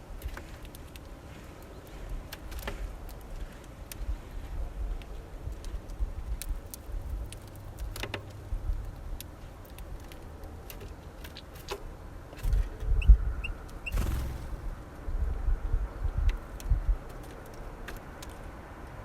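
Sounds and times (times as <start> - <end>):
low rumble: 13.9 - 15.4.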